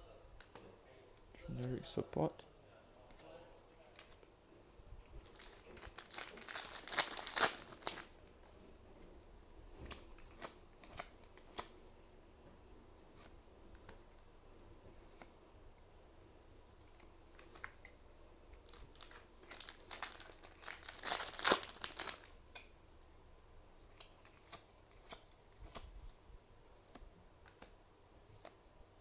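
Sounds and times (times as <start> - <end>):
plastic packaging crinkling: 5.2 - 8.6, 18.6 - 22.4.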